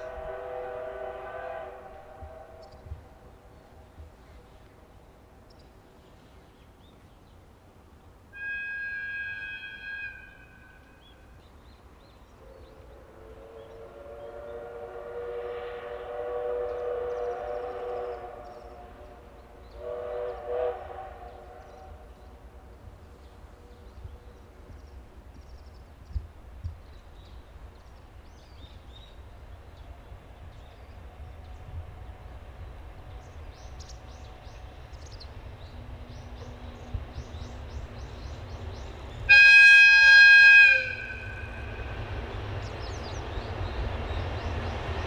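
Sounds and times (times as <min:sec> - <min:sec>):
steam whistle blasts: 0:00.0 - 0:03.0, 0:08.3 - 0:10.9, 0:12.5 - 0:22.2, 0:39.3 - 0:42.2
high-pitched locomotive horn: 0:00.0 - 0:03.3, 0:08.4 - 0:11.2, 0:13.0 - 0:22.2, 0:36.4 - 0:42.7.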